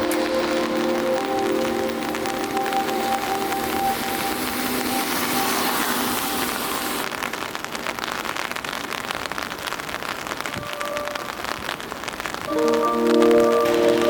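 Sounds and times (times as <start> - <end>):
faint held music notes: 0.0 - 7.0, 12.5 - 14.0
dense crackle: 0.0 - 14.0.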